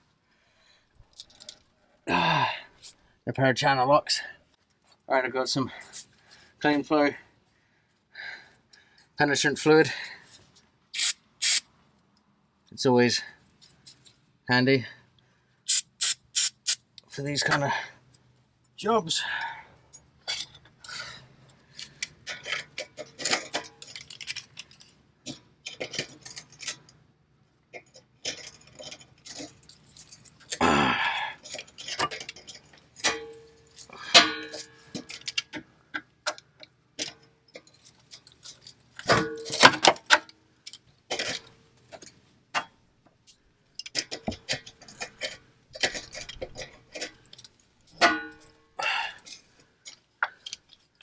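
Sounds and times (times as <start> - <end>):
short hiss: 11.0 - 11.6, 15.7 - 16.8.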